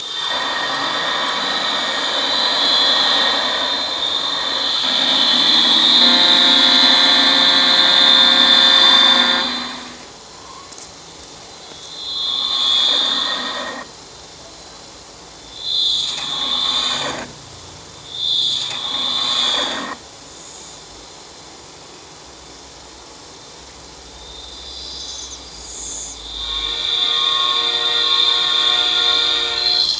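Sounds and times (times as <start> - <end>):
screeching noise bursts: 0.0 - 10.8, 11.8 - 14.0, 15.4 - 20.1, 24.3 - 29.9
locomotive running with squeal: 0.0 - 10.9, 11.6 - 20.1, 24.2 - 29.9
locomotive horn: 26.2 - 29.9.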